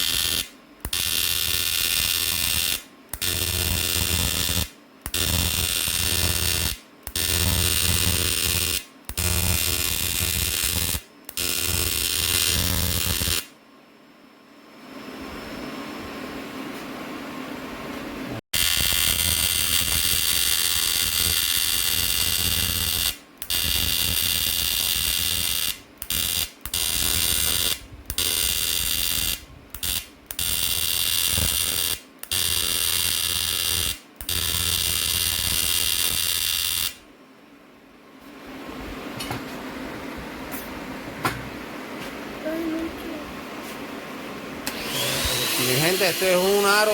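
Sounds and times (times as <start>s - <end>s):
handheld power tool running: 44.6s - 46.9s.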